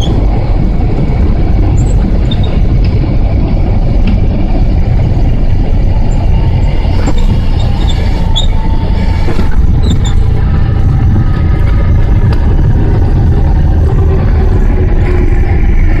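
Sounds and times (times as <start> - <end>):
small plane engine rumble: 0.0 - 16.0.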